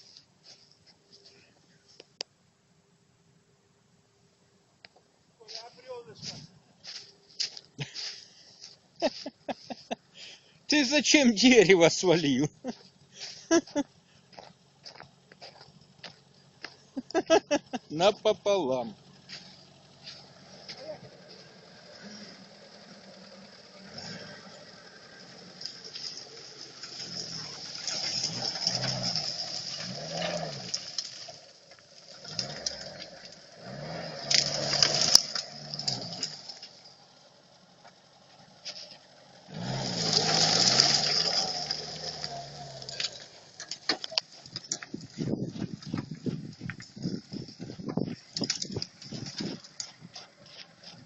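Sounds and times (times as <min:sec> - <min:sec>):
engine revving: 0:14.9 - 0:46.2.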